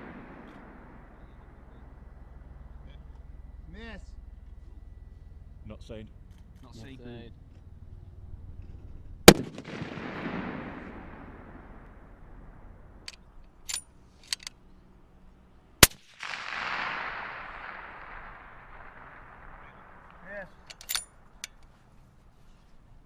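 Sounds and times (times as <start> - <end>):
rifle shots with echo: 0.0 - 2.8, 9.2 - 13.1, 15.8 - 21.4.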